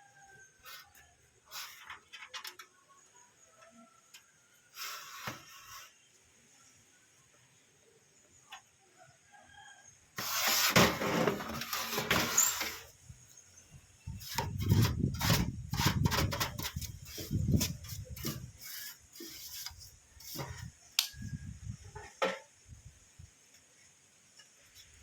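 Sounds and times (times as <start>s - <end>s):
metal panel scraping: 0.6s - 2.6s, 10.2s - 13.0s, 14.1s - 20.7s.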